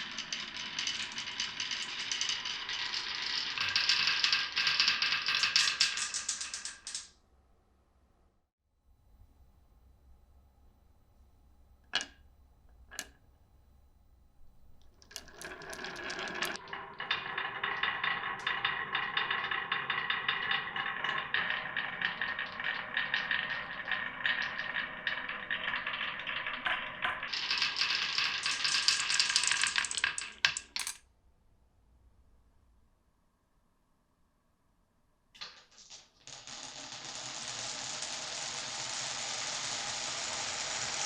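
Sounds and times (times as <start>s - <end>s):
marbles rolling on a track: 0.0s - 7.2s, 11.9s - 12.2s, 12.9s - 13.2s, 14.8s - 31.0s, 35.4s - 41.0s.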